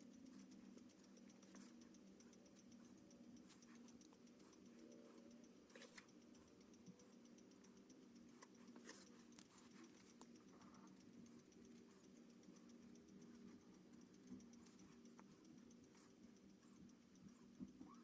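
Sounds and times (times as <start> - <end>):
low steady hum: 0.0 - 18.0
pen scratching on paper: 8.3 - 16.8.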